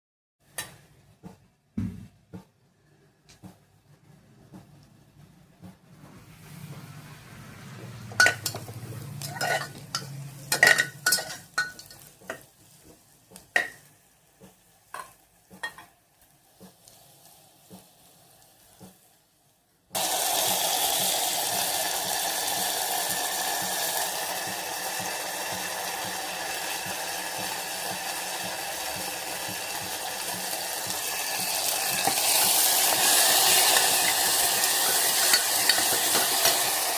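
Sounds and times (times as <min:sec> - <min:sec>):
metal utensils clinking: 0:08.1 - 0:12.5, 0:31.9 - 0:36.9
curry sizzling in oil: 0:08.1 - 0:19.2, 0:19.9 - 0:36.9.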